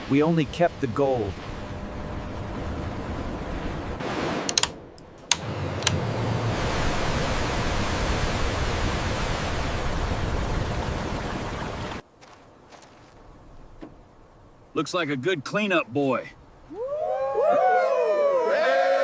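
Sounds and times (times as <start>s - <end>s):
suction dredge rushing water: 0.0s - 12.0s
sharp clicks: 4.4s - 6.0s.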